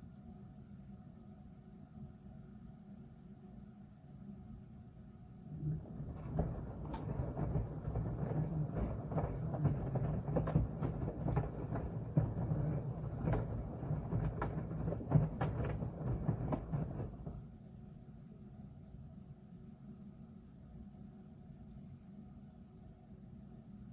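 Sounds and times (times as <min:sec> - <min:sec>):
washing machine drum churning: 0:05.5 - 0:17.5.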